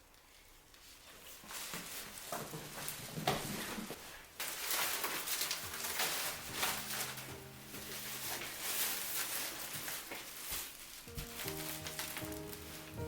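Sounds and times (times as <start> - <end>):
rustling and handling noises: 0.0 - 13.0
soft background music: 4.7 - 13.0.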